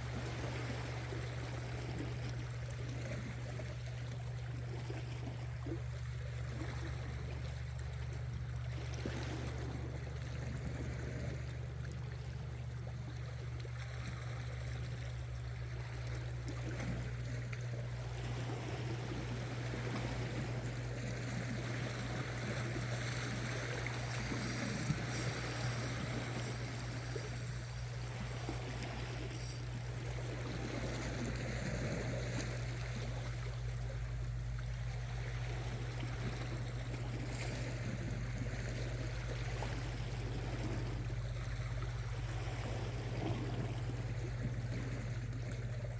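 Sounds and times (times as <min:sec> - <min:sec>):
water lapping against rocks: 0:00.0 - 0:45.9
low hum: 0:15.5 - 0:45.9.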